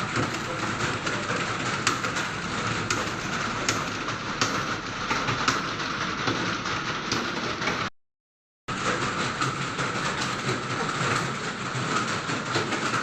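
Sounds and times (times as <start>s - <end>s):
computer keyboards clattering: 0.1s - 7.8s.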